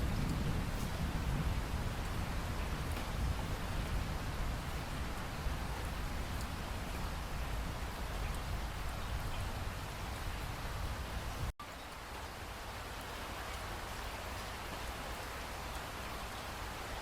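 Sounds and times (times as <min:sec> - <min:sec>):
rain drop ticks: 0:00.0 - 0:10.4
steady rain falling: 0:00.0 - 0:17.0.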